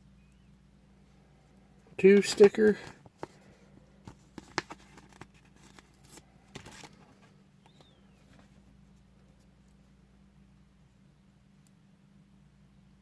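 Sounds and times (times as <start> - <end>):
hands handling plastic toy parts: 2.0 - 9.9.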